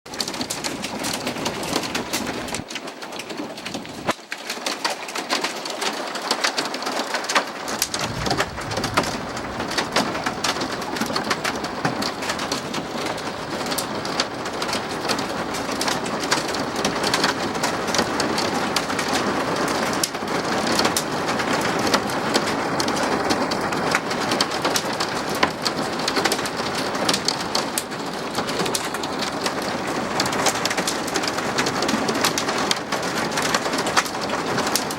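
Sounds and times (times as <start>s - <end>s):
hail and rain pelting down: 0.1s - 34.9s.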